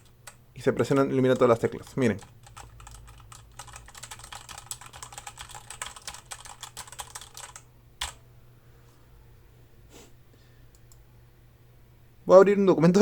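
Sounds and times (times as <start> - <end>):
mechanical keyboard typing: 0.0 - 8.2.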